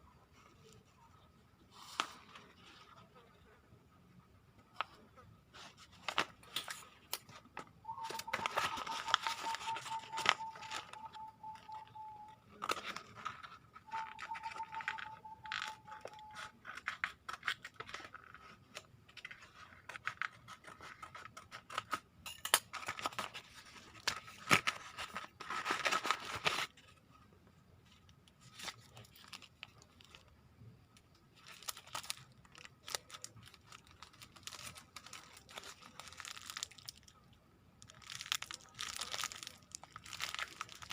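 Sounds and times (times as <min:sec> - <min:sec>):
plastic packaging tearing: 0:22.7 - 0:26.8, 0:31.4 - 0:37.2, 0:37.8 - 0:40.9.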